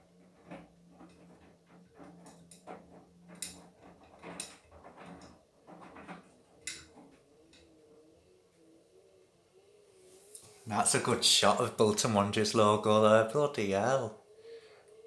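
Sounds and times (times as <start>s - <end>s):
tumbling load clicks and knocks: 0.0s - 7.7s
washing machine motor hum: 0.0s - 15.0s.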